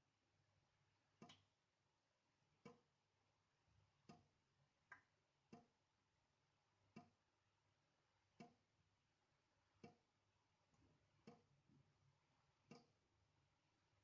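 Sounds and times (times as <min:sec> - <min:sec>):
water drops plinking into sink: 0:01.2 - 0:01.5, 0:04.9 - 0:05.7.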